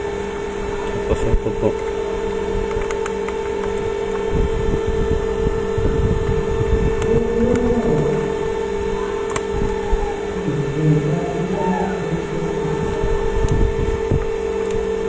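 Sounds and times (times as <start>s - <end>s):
steady mid-pitched hum: 0.0s - 15.0s
sharp clicks: 2.6s - 4.3s, 9.2s - 9.8s.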